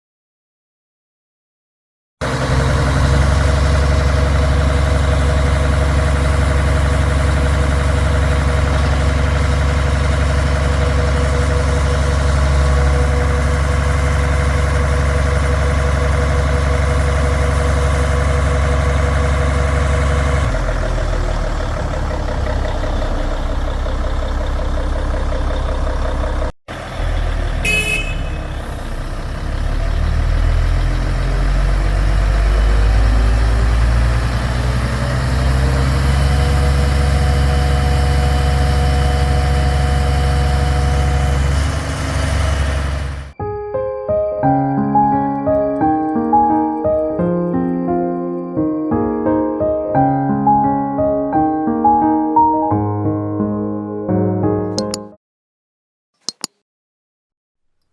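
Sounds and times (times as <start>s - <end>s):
diesel engine with whine: 2.2s - 43.4s
short high beep: 27.7s - 28.5s.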